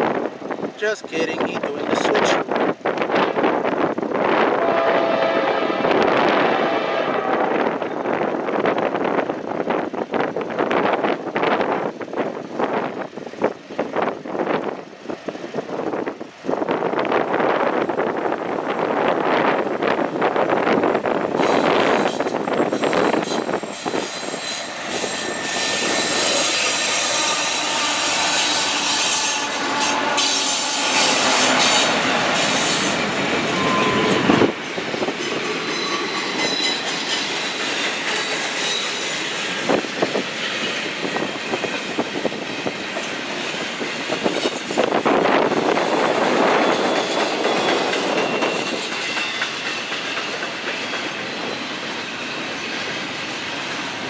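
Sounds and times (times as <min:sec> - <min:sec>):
railroad cars rolling on rails: 0:00.0 - 0:54.0
train wheels squealing: 0:21.4 - 0:41.8, 0:45.7 - 0:54.0
wheels clicking over rail joints: 0:45.7 - 0:52.0.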